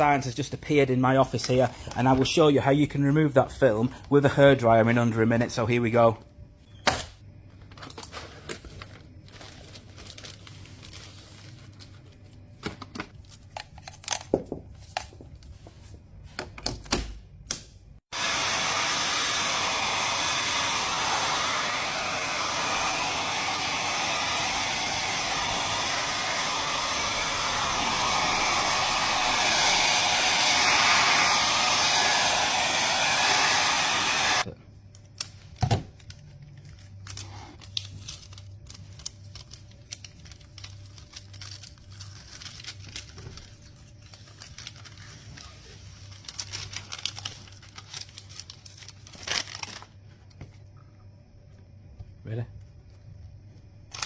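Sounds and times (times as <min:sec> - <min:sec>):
hairdryer blowing: 0:18.1 - 0:34.5.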